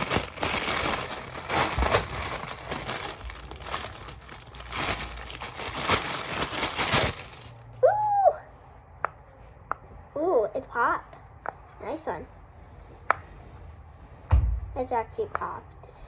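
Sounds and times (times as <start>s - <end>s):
plastic packaging crinkling: 0.0s - 7.8s.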